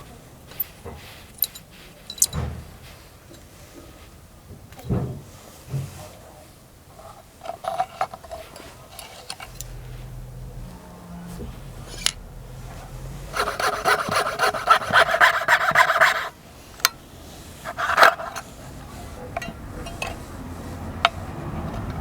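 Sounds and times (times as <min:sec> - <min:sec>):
abrasive scraping on metal coin: 0:11.2 - 0:16.4, 0:17.6 - 0:18.5.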